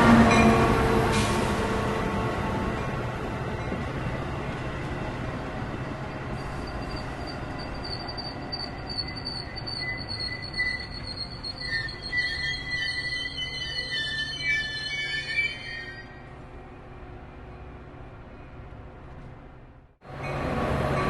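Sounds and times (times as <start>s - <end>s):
rumble of rolling train: 0.0s - 21.0s
train brakes squealing: 0.3s - 1.8s, 6.0s - 16.4s.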